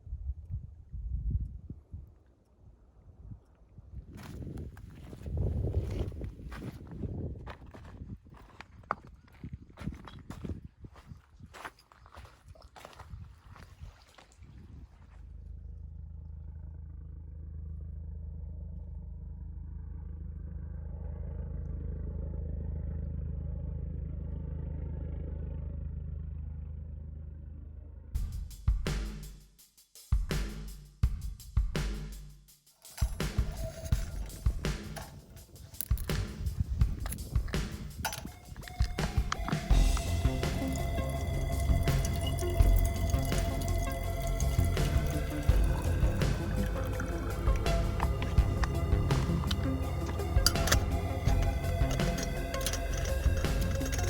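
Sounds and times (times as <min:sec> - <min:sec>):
low engine drone: 0:15.2 - 0:28.1, 0:37.0 - 0:54.0
music with drum hits: 0:28.2 - 0:35.0, 0:35.9 - 0:54.0
repeating low bass line: 0:38.5 - 0:54.0.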